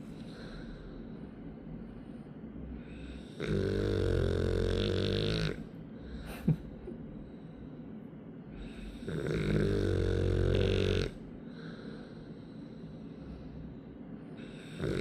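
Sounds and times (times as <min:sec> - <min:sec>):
dog snoring: 0:02.8 - 0:05.7, 0:08.6 - 0:11.3, 0:14.4 - 0:15.0.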